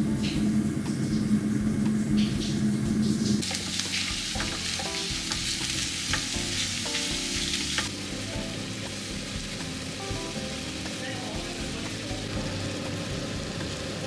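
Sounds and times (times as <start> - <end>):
food sizzling in a pan: 3.2 - 14.0.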